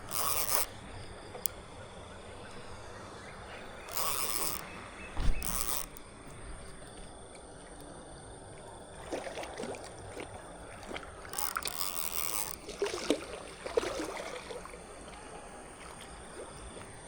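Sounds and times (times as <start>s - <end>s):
water splashing and sloshing: 8.4s - 17.0s.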